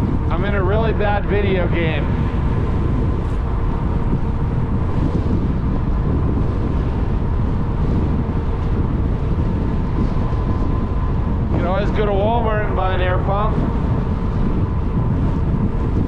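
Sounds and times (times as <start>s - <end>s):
faint steady hum: 0.0s - 16.0s
wind buffeting microphone: 0.0s - 16.0s.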